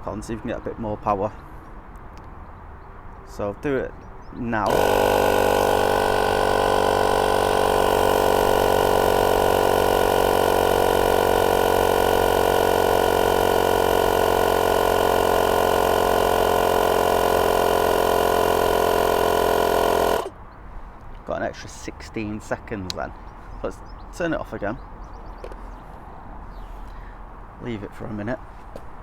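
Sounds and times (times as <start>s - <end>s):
air compressor running: 4.6s - 20.4s.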